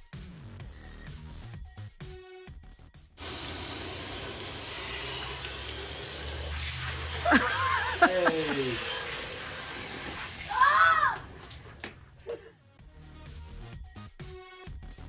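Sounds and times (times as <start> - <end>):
spraying water hiss: 3.2 - 11.8
child shrieking: 7.3 - 8.8, 10.5 - 11.3.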